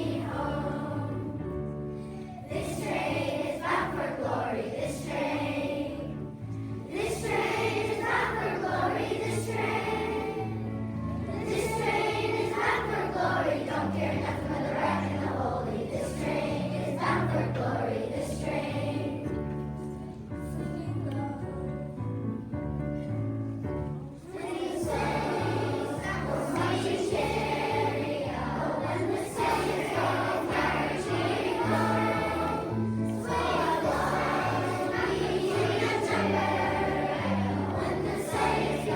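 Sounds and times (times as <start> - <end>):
choir singing a spiritual: 0.0 - 1.4, 2.4 - 6.2, 6.9 - 10.6, 11.3 - 19.3, 24.3 - 38.9
instrumental accompaniment: 19.4 - 38.9.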